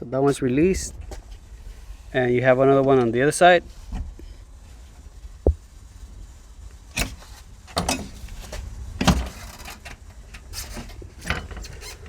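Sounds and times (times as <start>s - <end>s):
sharp clicks and knocks: 6.9s - 11.8s.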